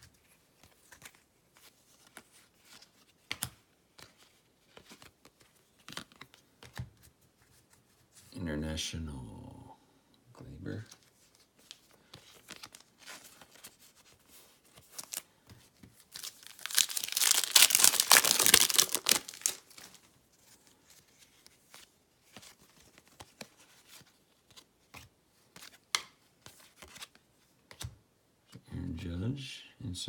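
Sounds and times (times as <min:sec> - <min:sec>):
cards rustling: 0:00.2 - 0:06.8, 0:10.7 - 0:27.9
wrapper tearing open: 0:14.9 - 0:15.2, 0:16.1 - 0:20.0.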